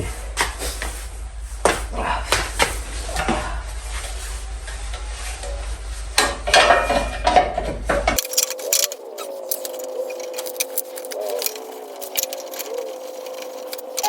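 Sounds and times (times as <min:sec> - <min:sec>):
steady low hum: 0:00.0 - 0:14.0
metal parts and tools clinking: 0:08.1 - 0:14.0.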